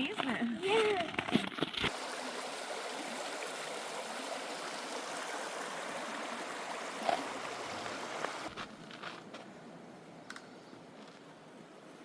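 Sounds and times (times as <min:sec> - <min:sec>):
stream flowing: 0:01.8 - 0:08.6.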